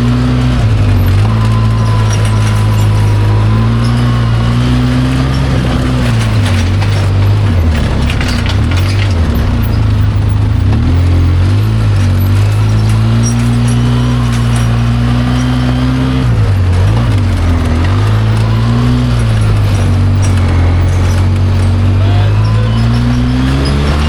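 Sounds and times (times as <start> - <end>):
atv engine revving: 0.0 - 24.0.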